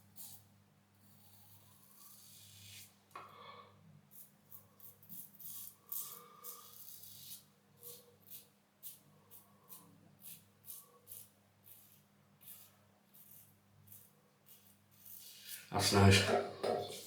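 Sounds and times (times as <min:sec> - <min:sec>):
razor scraping stubble: 0:04.1 - 0:17.0.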